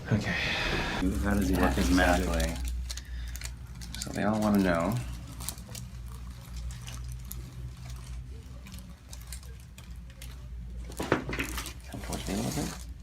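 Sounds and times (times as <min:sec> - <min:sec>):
steady low hum: 0:00.0 - 0:04.0
small handling clicks and rustles: 0:02.2 - 0:12.2.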